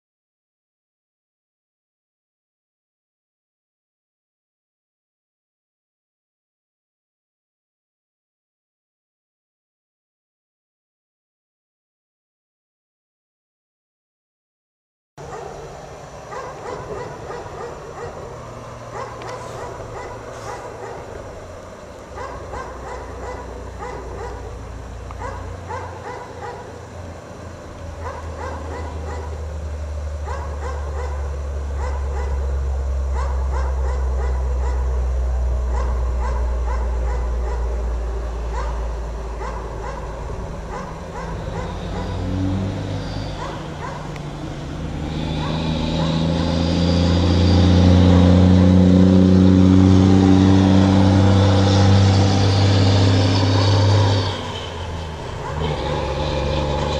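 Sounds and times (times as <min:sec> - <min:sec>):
dog barking: 0:15.2 - 0:21.4, 0:22.1 - 0:26.9, 0:28.0 - 0:29.5, 0:30.2 - 0:35.0, 0:35.6 - 0:44.3, 0:45.4 - 0:46.4, 0:53.5 - 0:55.8
vehicle engine rumble: 0:15.2 - 0:56.9.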